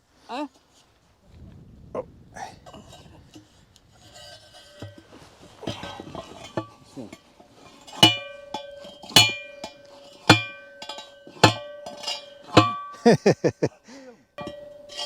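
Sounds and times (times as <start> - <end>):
heavy blows on metal ringing: 7.9 - 13.3, 14.4 - 15.0.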